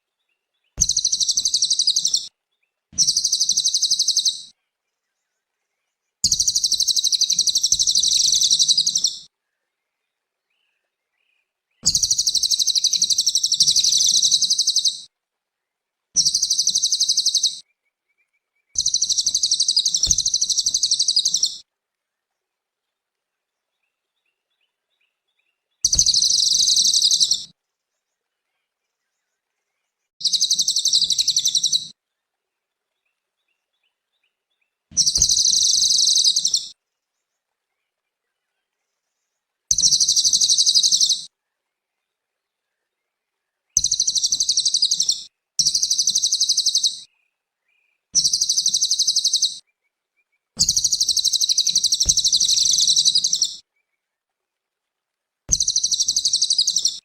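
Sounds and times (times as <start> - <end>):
songbird trilling: 0.8 - 2.3, 3.0 - 4.5, 6.3 - 9.2, 11.8 - 15.1, 16.2 - 17.6, 18.8 - 21.6, 25.8 - 27.5, 30.2 - 31.9, 35.0 - 36.7, 39.7 - 41.3, 43.8 - 47.1, 48.2 - 49.6, 50.6 - 53.6, 55.5 - 57.0.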